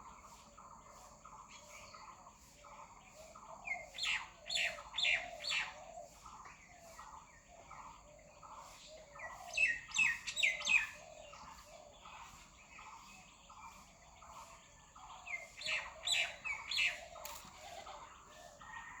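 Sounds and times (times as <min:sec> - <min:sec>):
faint repeated bird call: 0:07.6 - 0:19.0.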